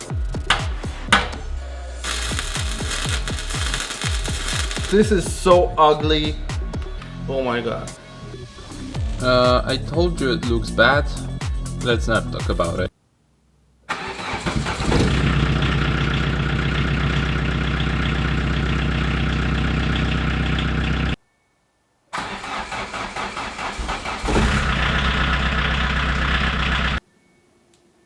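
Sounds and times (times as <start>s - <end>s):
engine cranking: 0.0s - 5.1s, 22.2s - 26.8s.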